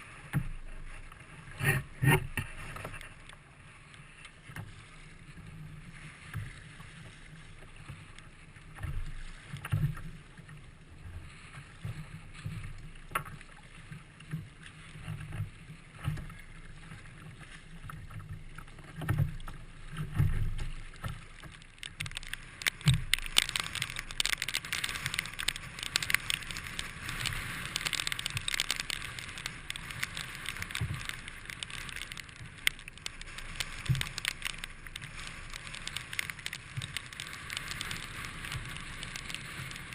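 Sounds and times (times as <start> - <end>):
water splashing: 0.0 - 39.9.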